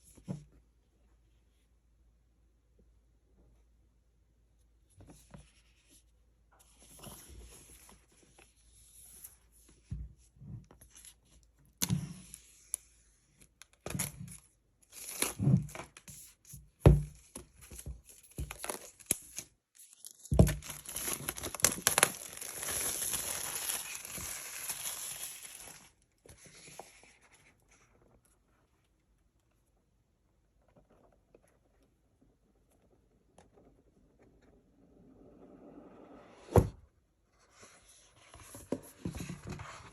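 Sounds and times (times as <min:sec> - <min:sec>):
packaging crinkling: 0:19.9 - 0:26.0
packaging tearing: 0:20.6 - 0:25.9.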